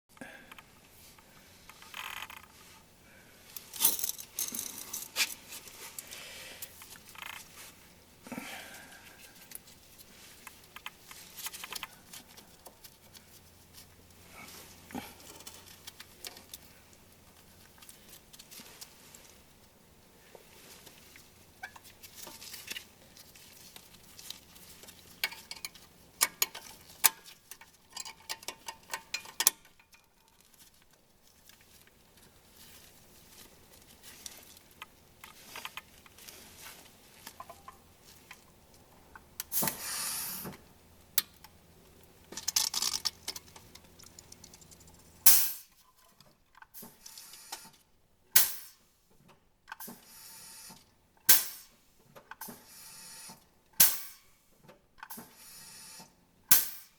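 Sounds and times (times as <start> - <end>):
clinks of tools and metal parts: 3.6 - 7.5, 25.0 - 30.5, 42.3 - 47.8, 53.3 - 55.4, 56.5 - 56.9
short hissing bursts: 39.5 - 40.5, 49.9 - 50.8, 52.6 - 53.4, 55.2 - 56.1.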